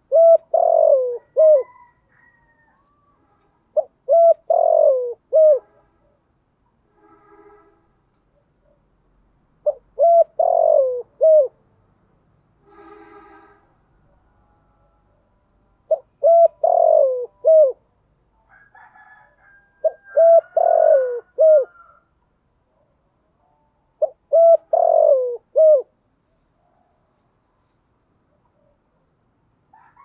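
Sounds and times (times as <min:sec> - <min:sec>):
dove cooing: 0:00.0 - 0:02.0, 0:03.8 - 0:05.7, 0:09.6 - 0:11.6, 0:15.9 - 0:17.8, 0:19.8 - 0:22.0, 0:24.0 - 0:25.9.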